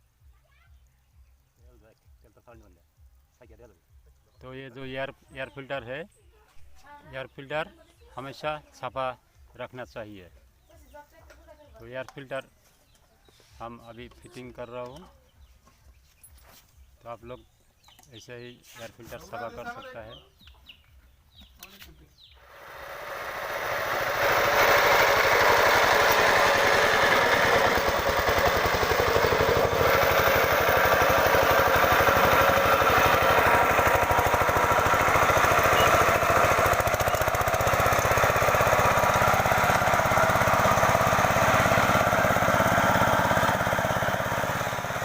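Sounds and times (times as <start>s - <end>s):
diesel engine running: 22.4s - 45.0s.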